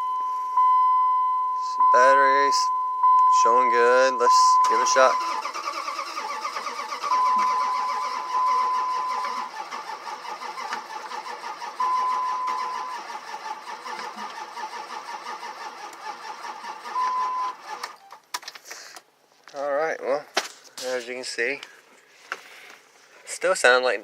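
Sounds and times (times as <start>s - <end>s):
steady beep tone: 0.0s - 5.2s, 7.1s - 9.5s, 11.8s - 12.9s
engine cranking on starter: 4.6s - 18.1s.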